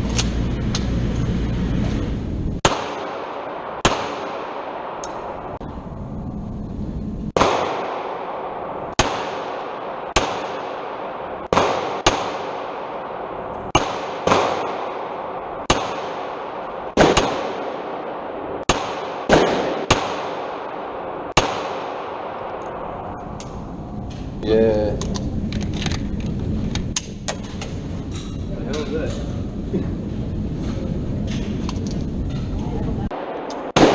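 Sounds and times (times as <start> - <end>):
gunshots with echo: 2.6 - 5.6, 7.3 - 23.2, 33.1 - 33.9.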